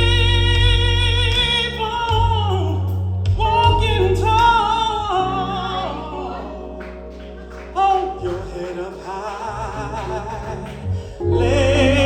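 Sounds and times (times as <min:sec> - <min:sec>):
steady bass line: 0:00.0 - 0:12.0
person singing with vibrato: 0:07.7 - 0:12.0.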